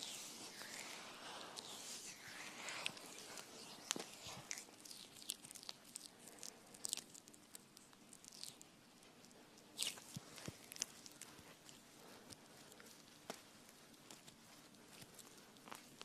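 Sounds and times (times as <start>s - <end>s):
faint high-pitched clicks and crackles: 0.0s - 16.0s.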